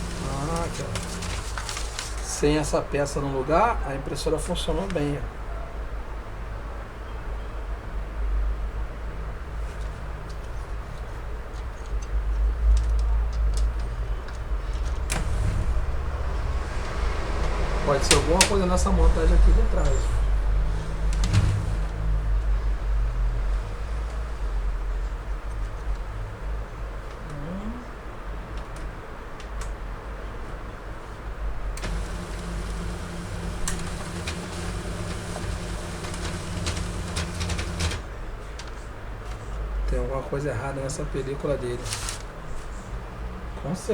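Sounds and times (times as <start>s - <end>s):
printer clicks: 0.0s - 1.8s, 14.8s - 16.1s, 16.7s - 19.0s, 31.8s - 38.1s
laser printer rumbling: 0.0s - 2.0s, 15.2s - 22.2s, 31.8s - 38.1s.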